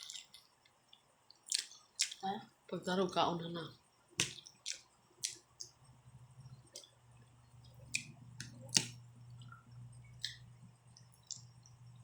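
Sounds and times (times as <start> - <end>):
faint low hum: 0.0 - 12.0
wet mouth clicks from eating: 4.2 - 5.8, 7.9 - 9.6, 10.2 - 11.8.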